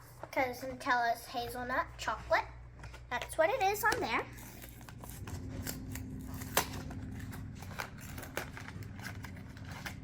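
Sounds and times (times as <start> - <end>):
low steady hum: 0.0 - 10.0
snack package crackling: 4.3 - 10.0.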